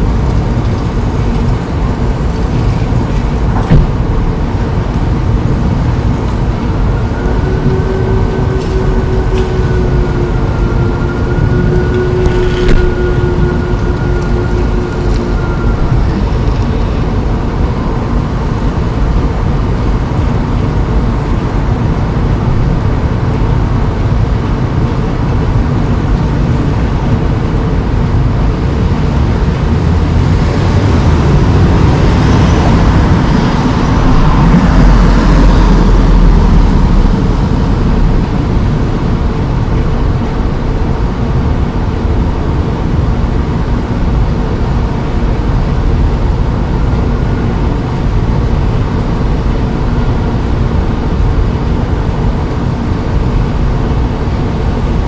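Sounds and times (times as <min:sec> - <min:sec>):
vehicle driving past: 0:00.0 - 0:17.8
steady low rumble: 0:00.0 - 0:55.0.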